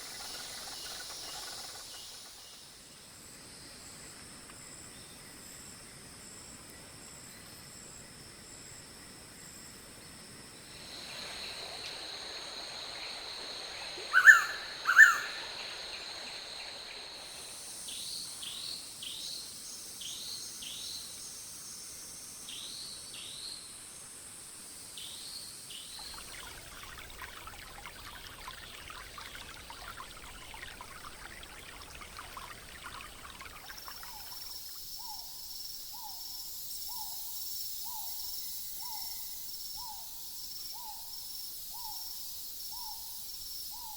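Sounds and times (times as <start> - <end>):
insect and cicada drone: 0.0 - 43.9
loud bird calls: 14.0 - 16.5
bird hooting: 14.1 - 15.8.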